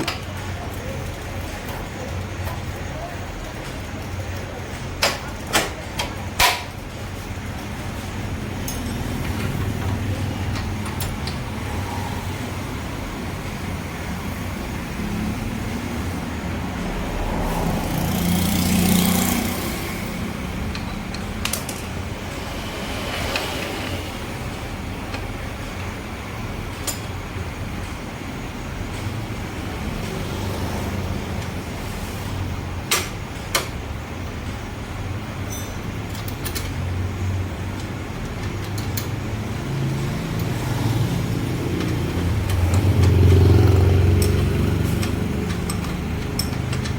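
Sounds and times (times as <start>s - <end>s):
road traffic rumble: 0.0s - 46.9s
tool clicks and taps: 44.1s - 46.9s.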